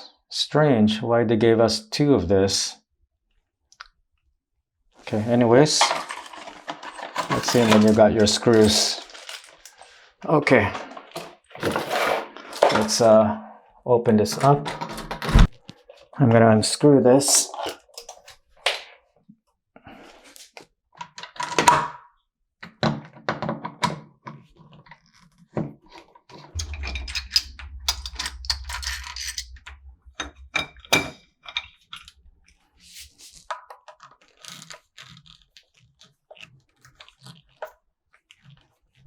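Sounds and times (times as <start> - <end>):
clicks and clatter of metal parts: 5.8 - 10.0, 14.4 - 15.2
low steady hum: 26.6 - 32.2.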